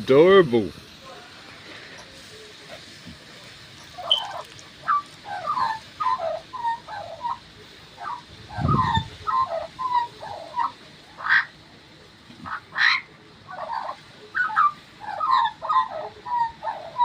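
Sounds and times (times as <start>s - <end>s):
magpie singing: 3.9s - 7.4s, 8.0s - 11.5s, 12.5s - 17.0s.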